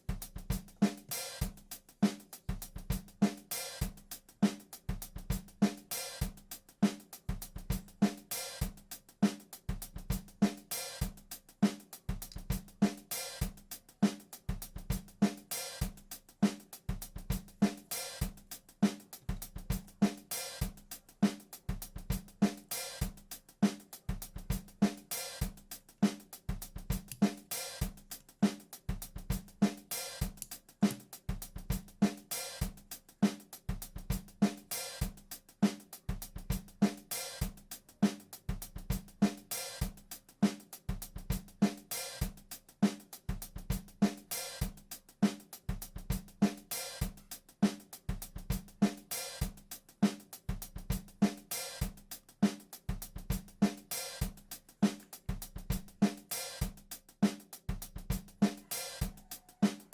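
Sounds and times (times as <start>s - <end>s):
hi-hat: 0.0s - 59.9s
snare drum: 0.0s - 59.9s.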